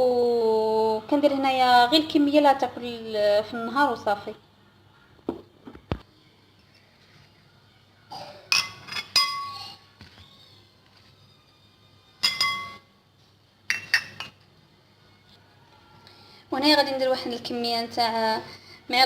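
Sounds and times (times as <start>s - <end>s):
glassware clinking: 8.5s - 9.8s, 12.2s - 12.9s, 13.7s - 14.4s.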